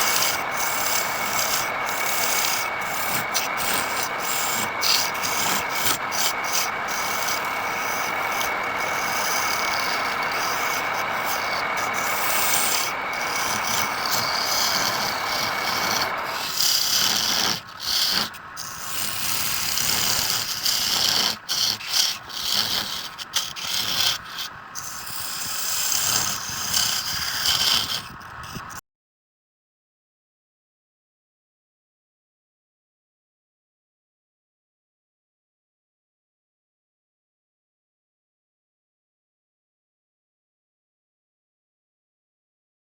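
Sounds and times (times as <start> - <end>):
faint high whine: 0.0 - 28.8
tool rubbing wood on a lathe: 0.0 - 28.8.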